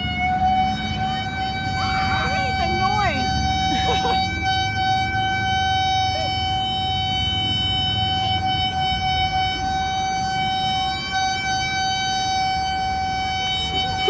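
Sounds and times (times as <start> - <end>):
steady high-pitched tone: 0.0 - 6.0.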